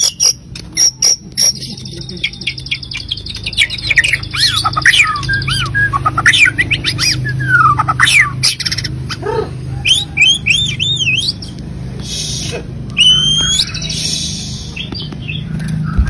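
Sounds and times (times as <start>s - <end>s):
bird singing whistles: 0.0s - 8.9s, 9.8s - 15.4s.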